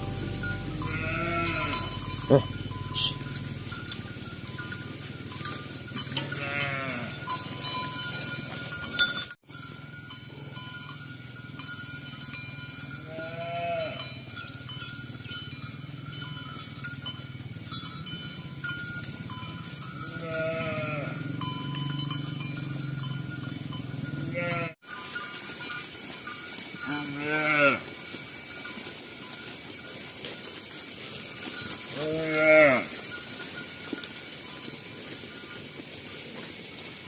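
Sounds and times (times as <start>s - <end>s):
high-pitched bleating calls: 0.0s - 3.3s, 6.3s - 7.1s, 13.1s - 14.1s, 20.2s - 21.3s, 24.2s - 24.8s, 26.9s - 27.8s, 32.0s - 32.9s
livestock bells clanking: 0.0s - 37.0s.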